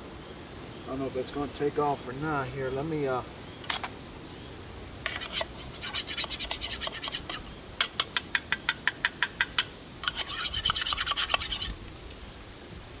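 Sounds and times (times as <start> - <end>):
rasping scrapes by hand: 5.0 - 8.2, 10.0 - 11.8.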